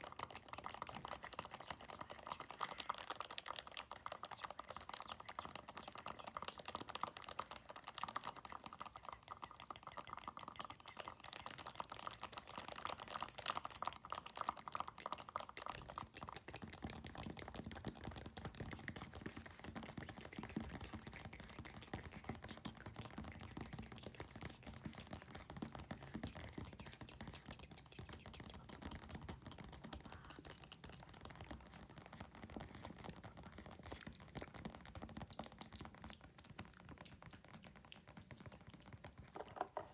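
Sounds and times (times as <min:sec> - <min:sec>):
mouth sounds: 0:00.0 - 0:31.2
fast fingernail tapping: 0:00.0 - 0:39.9.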